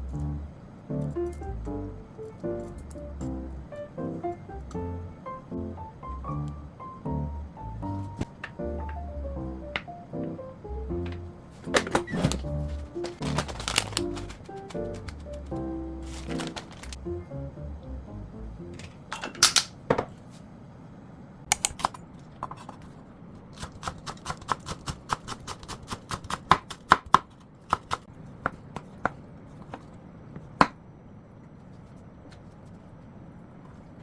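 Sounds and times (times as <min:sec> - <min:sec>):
background music: 0:00.0 - 0:18.9.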